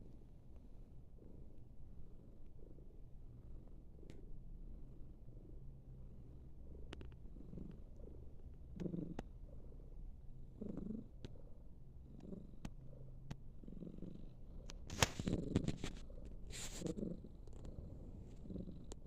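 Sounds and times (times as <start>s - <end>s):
pet snoring: 6.8s - 9.9s, 10.5s - 11.4s, 12.0s - 13.0s, 13.6s - 19.0s.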